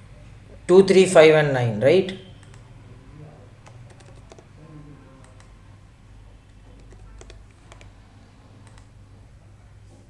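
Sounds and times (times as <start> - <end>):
computer keys clicking: 2.4 - 2.7, 3.6 - 4.5, 5.2 - 5.6, 6.5 - 8.0, 8.6 - 9.0.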